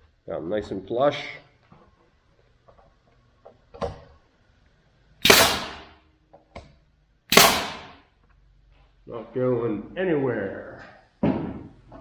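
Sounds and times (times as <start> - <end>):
loud sharp bangs: 5.2 - 6.0, 7.3 - 8.0.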